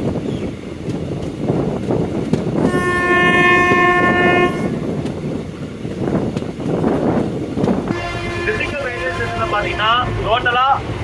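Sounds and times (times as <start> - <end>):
train rumbling and clattering: 0.0 - 11.0
train horn blast: 2.6 - 5.0, 7.9 - 10.4.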